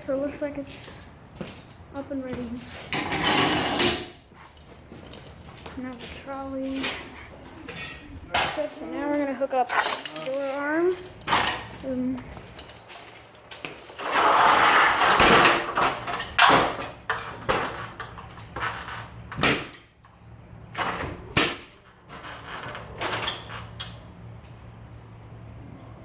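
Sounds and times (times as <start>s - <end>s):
metal rattling scrape: 2.7s - 5.6s, 12.5s - 19.2s
metal knocks and clinks: 2.9s - 6.6s, 7.7s - 14.2s.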